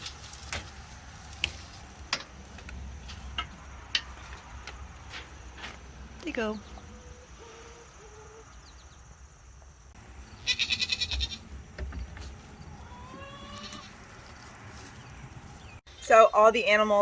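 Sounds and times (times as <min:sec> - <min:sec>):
goat bleating: 0:10.4 - 0:11.5, 0:12.8 - 0:14.0.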